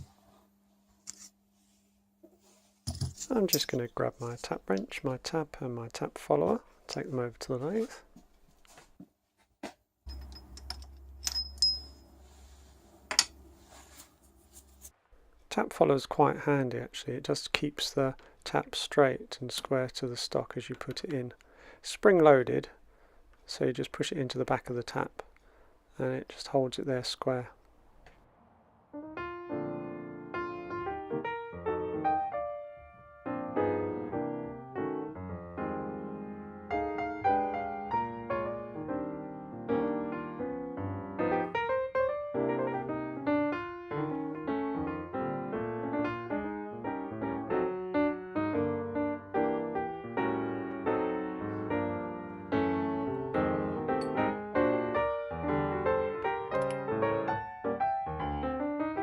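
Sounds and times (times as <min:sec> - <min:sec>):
steel hand tools clinking: 0:02.9 - 0:03.9, 0:10.1 - 0:12.1
high metallic rings: 0:10.1 - 0:12.4
piano melody: 0:28.9 - 0:59.0.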